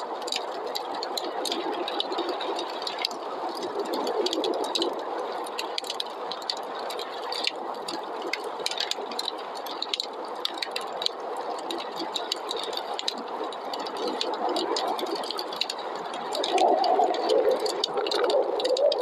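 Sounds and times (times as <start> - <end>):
wood fire crackling and popping: 0.0 - 19.0
rushing snowstorm wind: 16.2 - 19.0.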